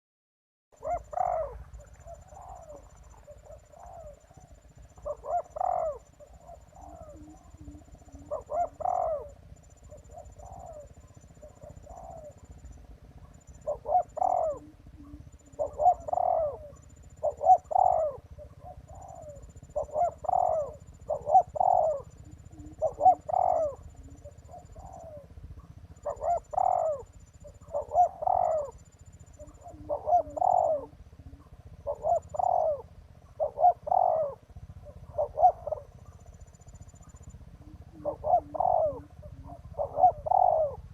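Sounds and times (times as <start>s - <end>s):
dove cooing: 0.8s - 40.9s.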